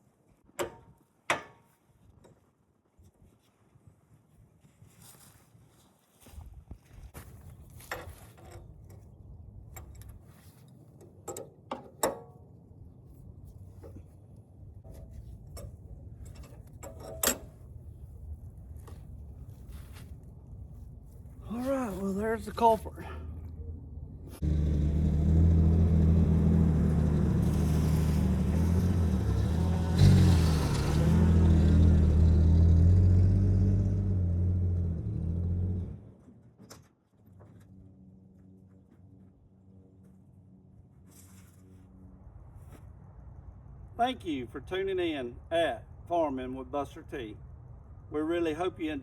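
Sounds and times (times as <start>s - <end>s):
hand tools clanking on metal: 14.9s - 17.6s
vehicle engine running: 24.4s - 36.0s.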